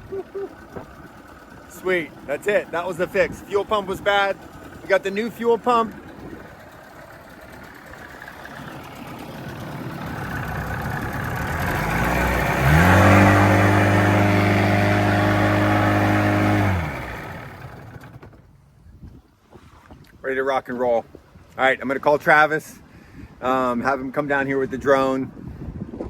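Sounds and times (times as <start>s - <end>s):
outboard motor running: 0.0s - 20.2s.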